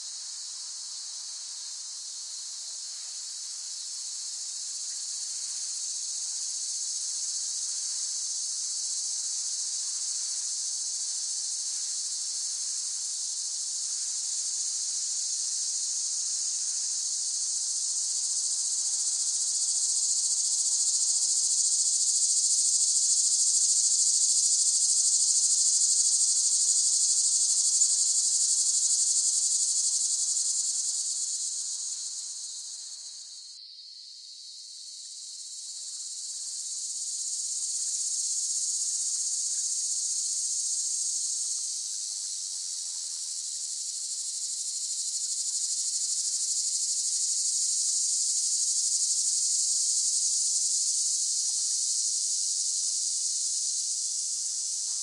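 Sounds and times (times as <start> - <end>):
cicadas buzzing: 14.2 - 42.0, 43.3 - 55.0.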